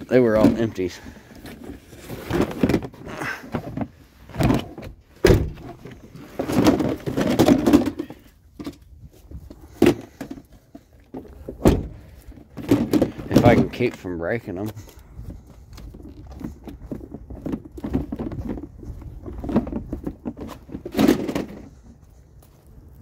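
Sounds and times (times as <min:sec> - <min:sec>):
bins scraping and rattling: 0:00.0 - 0:22.0
storage bins thunking and knocking: 0:02.2 - 0:08.7, 0:11.1 - 0:14.0, 0:16.9 - 0:21.7.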